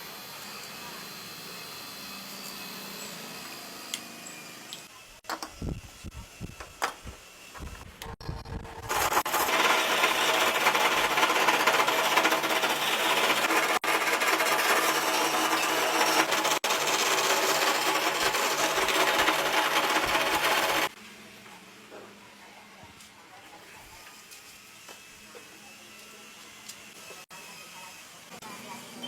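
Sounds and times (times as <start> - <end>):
power tool grinding metal: 7.6 - 21.0.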